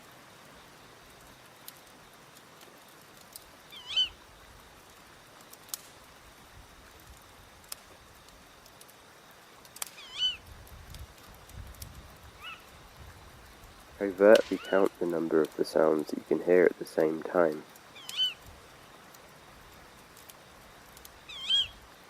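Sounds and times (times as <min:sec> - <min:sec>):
stream hissing: 0:00.0 - 0:22.0
wind: 0:00.0 - 0:22.0
wood fire crackling: 0:00.0 - 0:22.0
owl calling: 0:03.7 - 0:04.2, 0:10.0 - 0:10.4, 0:12.4 - 0:12.7, 0:14.4 - 0:14.9, 0:17.9 - 0:18.4, 0:21.3 - 0:21.8.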